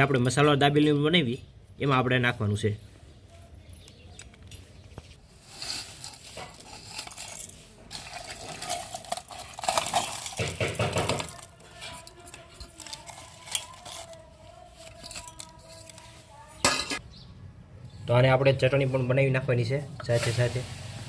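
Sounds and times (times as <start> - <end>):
steel spoon clinking and scraping: 5.4 - 17.0.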